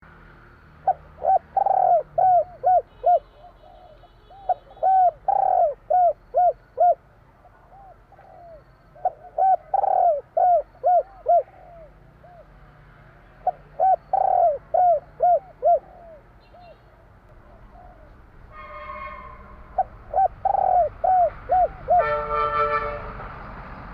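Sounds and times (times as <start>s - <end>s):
dove cooing: 0.8s - 12.5s, 13.4s - 16.8s, 17.4s - 18.3s, 19.7s - 22.2s.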